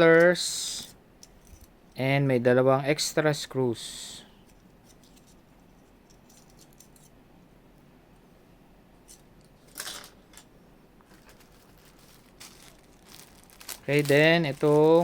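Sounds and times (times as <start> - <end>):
plastic packaging rustle: 11.0 - 15.0.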